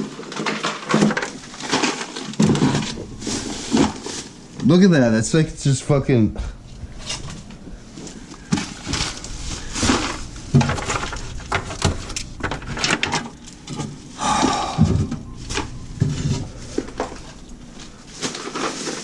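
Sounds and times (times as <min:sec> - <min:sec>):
food containers knocking and clattering: 0:00.0 - 0:04.4
plastic bag rustling: 0:00.0 - 0:19.0.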